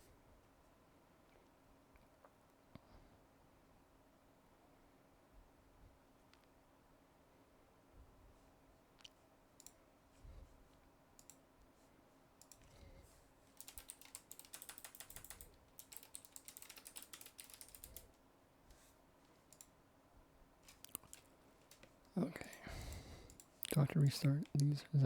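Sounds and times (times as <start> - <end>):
keyboard typing: 13.5 - 18.2, 20.6 - 24.8.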